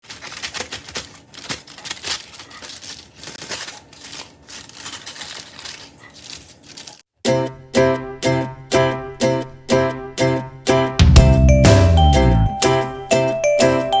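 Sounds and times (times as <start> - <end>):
wrapping material crinkling: 0.0 - 7.1.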